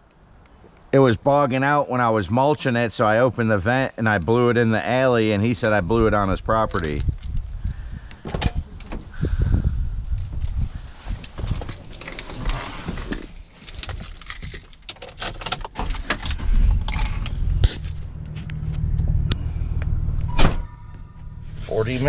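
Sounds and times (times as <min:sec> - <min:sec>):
loose metal rattling: 0:06.0 - 0:09.2, 0:10.1 - 0:18.3
low motor hum: 0:16.4 - 0:22.0.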